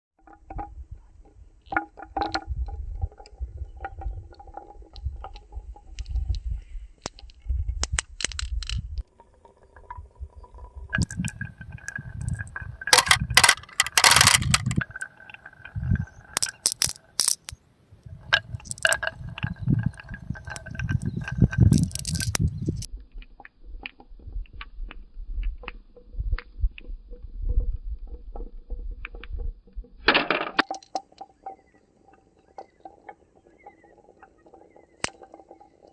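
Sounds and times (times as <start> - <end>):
marbles rolling down wooden run: 11.0 - 15.1, 15.7 - 17.5, 18.2 - 22.9.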